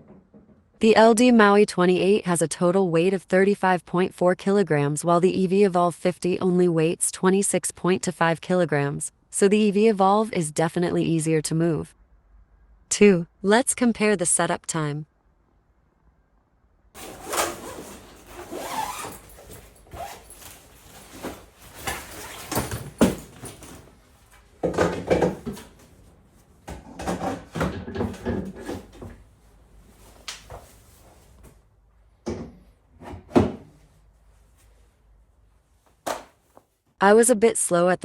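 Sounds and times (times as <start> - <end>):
speaker parts clacking and knocking: 0.0 - 0.8, 22.6 - 25.9, 26.7 - 29.2.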